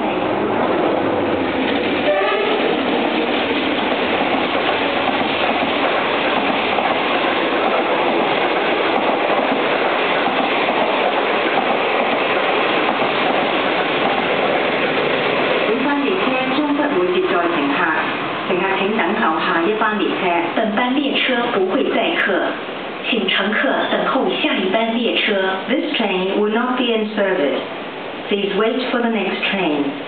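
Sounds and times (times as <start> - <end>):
train wheels rumbling on rails: 0.0 - 30.0
train horn: 2.0 - 2.7.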